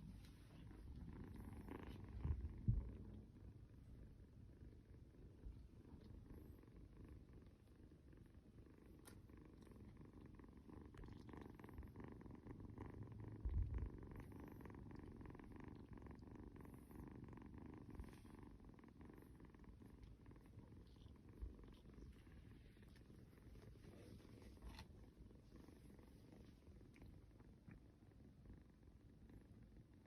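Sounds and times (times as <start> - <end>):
kitten purring: 0.0 - 30.0
soft low thump: 2.2 - 3.2.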